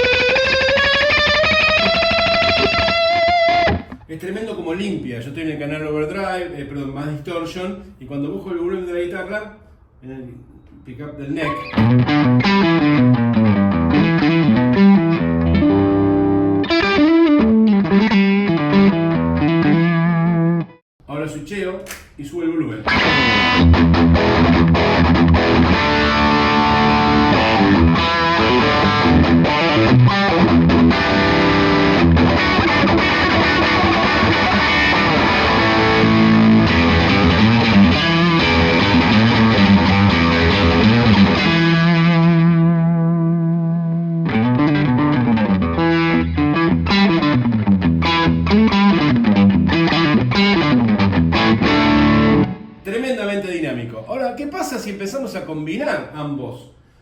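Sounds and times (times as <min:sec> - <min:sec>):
distorted electric guitar: 0:00.0 - 0:04.1, 0:11.4 - 0:20.8, 0:22.8 - 0:52.8.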